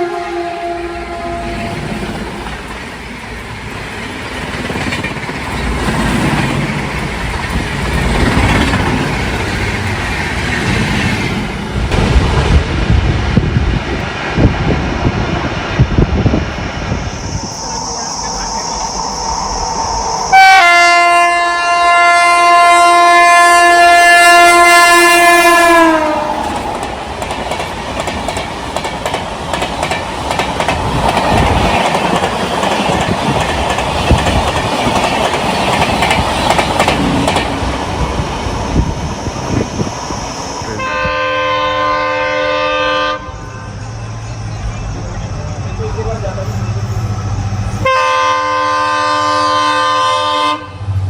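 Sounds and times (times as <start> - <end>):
locomotive horn blast: 0.0 - 1.9, 20.3 - 26.5, 40.7 - 43.9, 47.8 - 50.9
train coaches clattering over rails: 1.3 - 16.4, 25.1 - 41.1.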